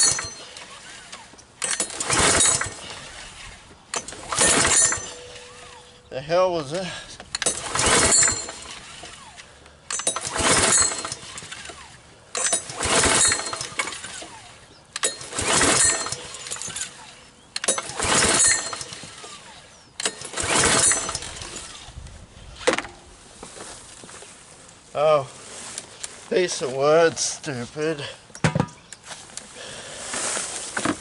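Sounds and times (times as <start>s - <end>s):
lawn mower pull cord cranking: 0.0s - 23.0s
blade clattering against wood: 9.9s - 14.4s.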